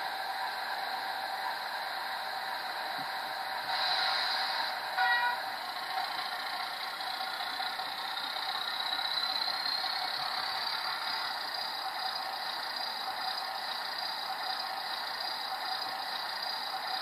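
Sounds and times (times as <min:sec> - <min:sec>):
electronic locomotive engine drone: 0:00.0 - 0:17.0
locomotive horn: 0:03.7 - 0:05.5.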